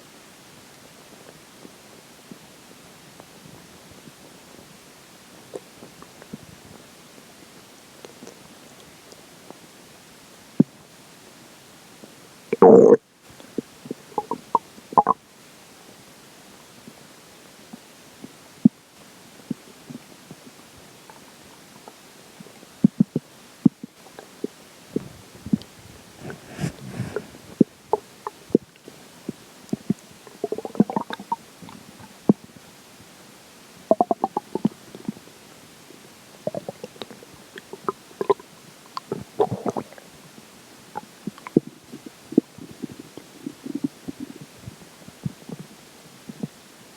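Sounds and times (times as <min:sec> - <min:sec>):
faint steady hiss: 0:00.0 - 0:46.9
stomach gurgling pops: 0:12.6 - 0:13.0, 0:25.0 - 0:27.6, 0:29.7 - 0:31.4, 0:39.0 - 0:40.0, 0:41.0 - 0:44.6.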